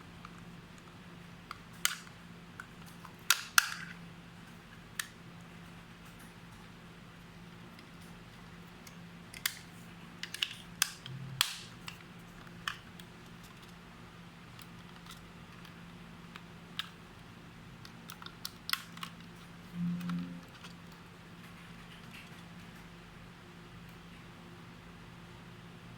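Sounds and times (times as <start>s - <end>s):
steady low hum: 11.0s - 14.6s, 19.4s - 21.9s
short low buzz: 19.7s - 20.6s.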